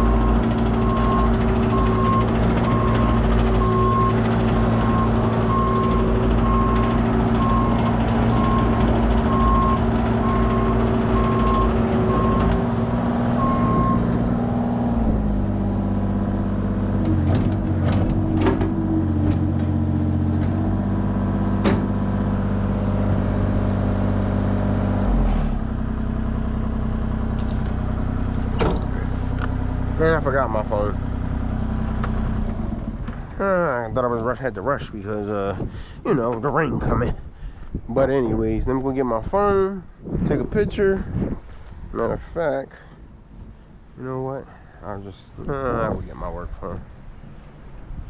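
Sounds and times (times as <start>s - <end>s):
diesel truck engine idling: 0.0s - 33.7s
backup alarm beeping: 0.2s - 12.6s, 13.4s - 14.1s.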